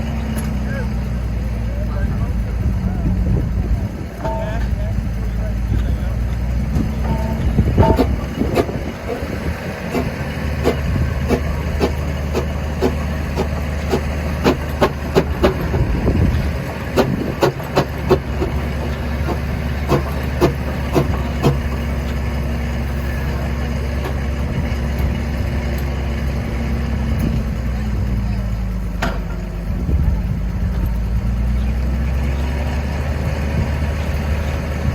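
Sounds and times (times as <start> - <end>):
steam engine beating: 4.1 - 24.6.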